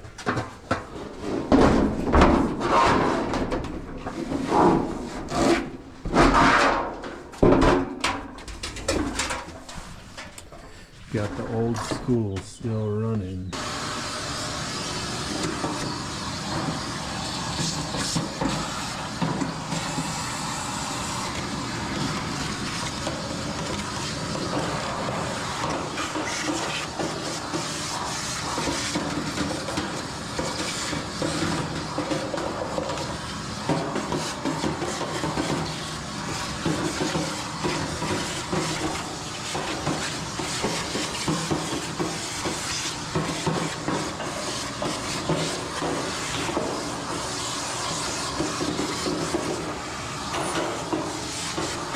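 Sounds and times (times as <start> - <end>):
clothes dryer running: 13.6 - 51.9.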